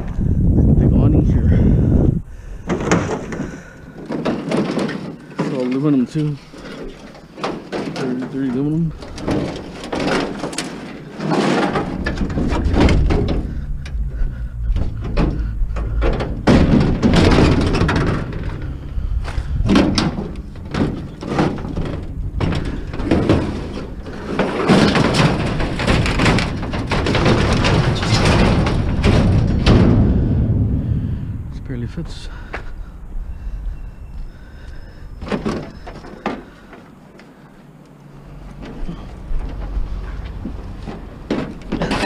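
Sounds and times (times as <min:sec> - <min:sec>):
low rumble: 0:00.0 - 0:04.0, 0:11.8 - 0:36.0
thin metal clanking and rattling: 0:02.7 - 0:30.6, 0:38.5 - 0:42.0.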